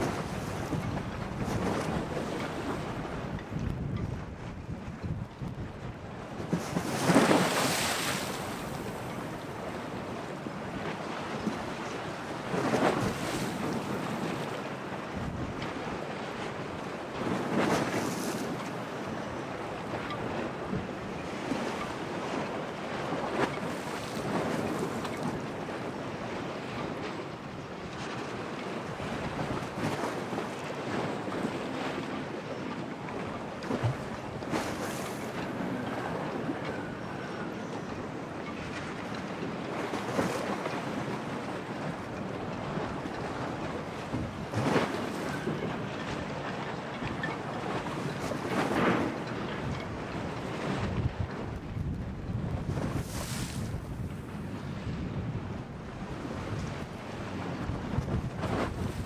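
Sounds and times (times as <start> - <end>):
waves washing in: 0.0 - 3.6, 6.3 - 16.0, 50.5 - 59.0
storm waves breaking: 0.0 - 59.0
wind buffeting microphone: 0.0 - 59.0.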